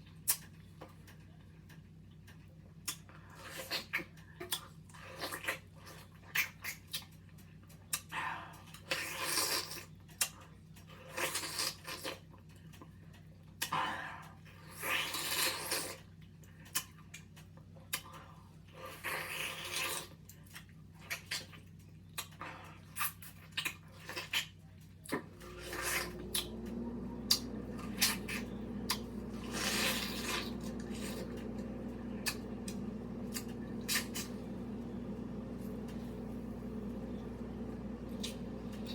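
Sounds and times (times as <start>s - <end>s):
steady low hum: 25.2s - 38.9s.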